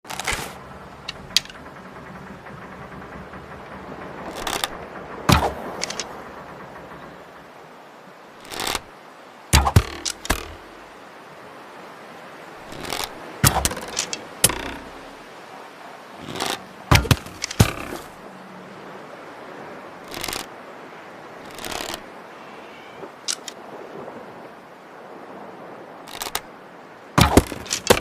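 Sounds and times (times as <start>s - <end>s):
bow snaps and thwacks: 5.3s - 6.1s, 9.6s - 10.7s, 12.7s - 15.1s, 23.3s - 23.6s, 27.2s - 28.0s
arrow swishes: 5.3s - 6.2s, 9.6s - 10.8s, 12.7s - 15.1s.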